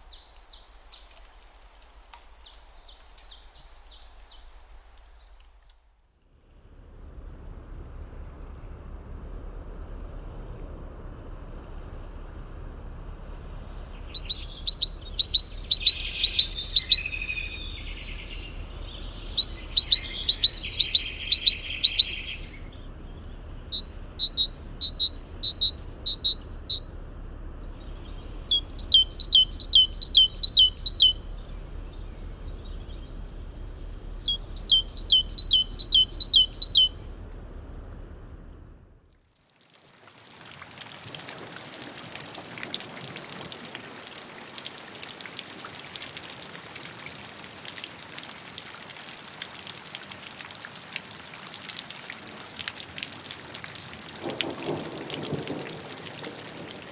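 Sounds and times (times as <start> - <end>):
songbird singing: 0.0 - 6.0, 13.4 - 38.8, 53.8 - 56.9.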